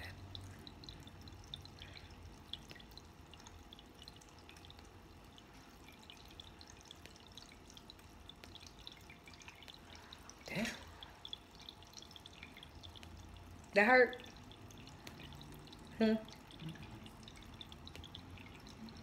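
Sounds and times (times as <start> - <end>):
small water drips: 0.0 - 19.0
water fountain trickling: 0.0 - 19.0.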